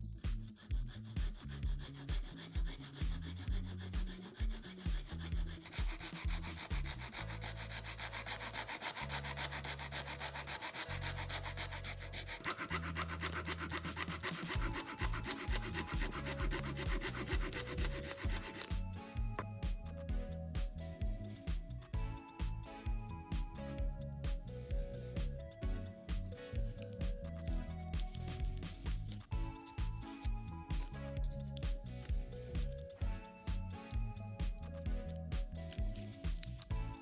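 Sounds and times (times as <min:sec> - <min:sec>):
rapid sanding strokes: 0:00.0 - 0:20.0, 0:25.0 - 0:37.0
background music with bass beat: 0:00.0 - 0:37.0.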